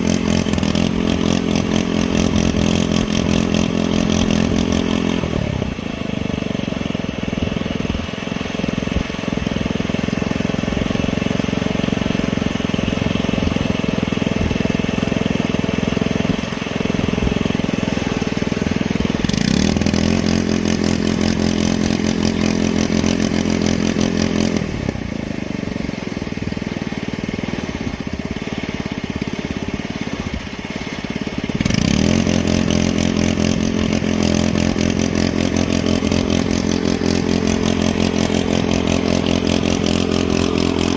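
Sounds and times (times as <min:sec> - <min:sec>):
machine motor running: 0:31.6 - 0:40.9.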